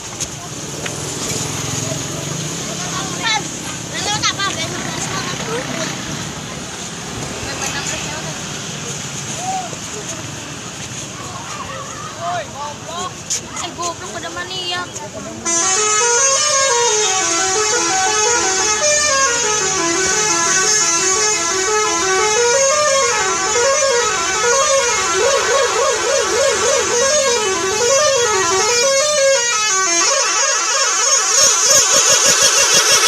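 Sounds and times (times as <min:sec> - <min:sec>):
bus multi-tone horn tune: 0:15.4 - 0:33.0.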